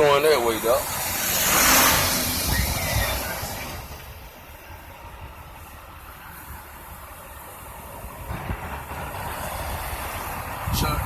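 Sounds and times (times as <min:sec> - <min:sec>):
vehicle passing by: 0:00.1 - 0:04.2.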